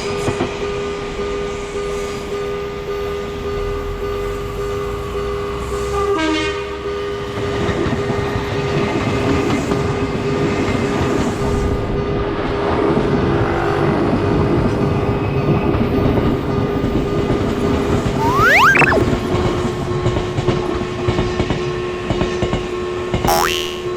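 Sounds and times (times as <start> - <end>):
rising whistle-like tone: 18.2 - 19.1.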